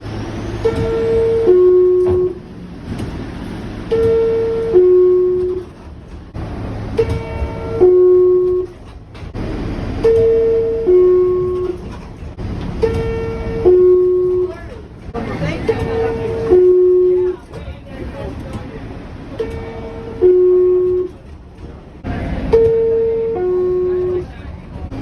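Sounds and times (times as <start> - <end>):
subway car noise: 0.0 - 25.0
two-note door chime: 7.0 - 8.8.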